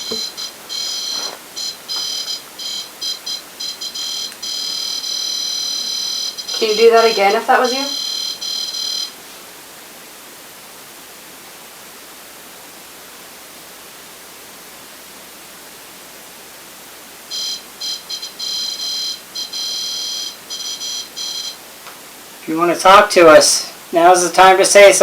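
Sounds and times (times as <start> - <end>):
high electronic alarm beeps: 0.0 - 9.2, 17.3 - 21.6
steady hiss: 0.0 - 25.0.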